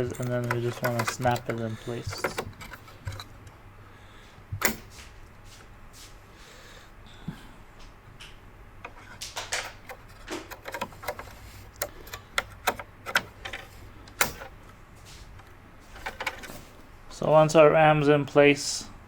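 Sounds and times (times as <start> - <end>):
ram stick clicking into slot: 0.0 - 3.3, 4.6 - 4.9, 8.8 - 14.6.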